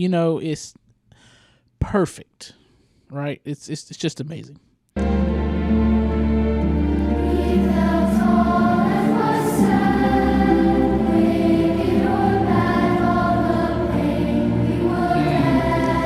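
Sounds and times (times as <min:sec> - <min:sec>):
choir singing: 0:05.0 - 0:16.0
orchestral accompaniment: 0:05.0 - 0:16.0.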